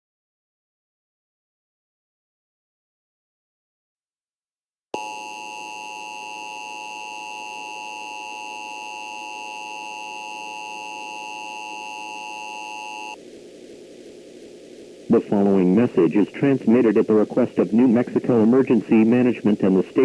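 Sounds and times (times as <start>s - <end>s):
faint hiss: 13.1s - 20.0s.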